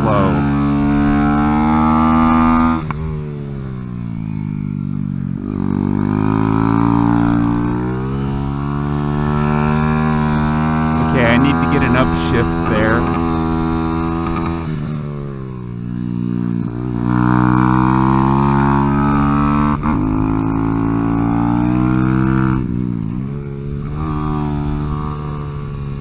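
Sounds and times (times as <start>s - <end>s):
motorcycle engine: 0.0s - 26.0s.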